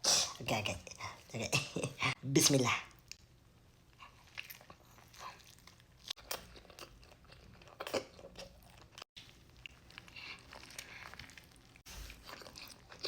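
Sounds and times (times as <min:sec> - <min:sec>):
chewing food: 0:03.9 - 0:13.0.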